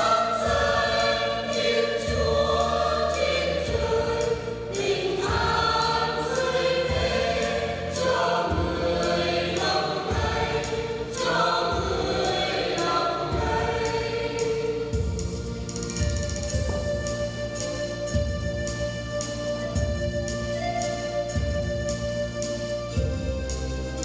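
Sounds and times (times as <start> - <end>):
choir singing in harmony: 0.0 - 18.5
instrumental accompaniment: 0.0 - 24.0.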